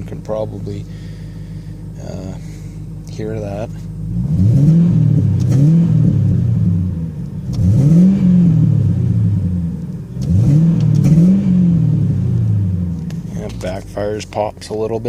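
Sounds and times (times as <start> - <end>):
car engine revving: 0.0 - 15.0
exhaust backfire pops: 2.0 - 14.9.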